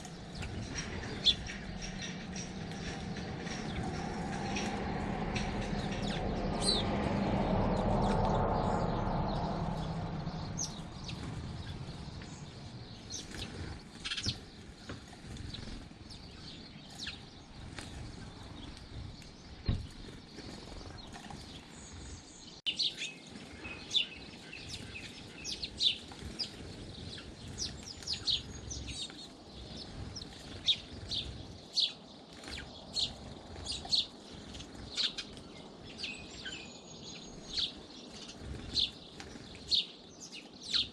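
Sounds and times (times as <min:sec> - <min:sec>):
low rumble: 0:00.0 - 0:14.0
small birds chirping: 0:00.0 - 0:40.9.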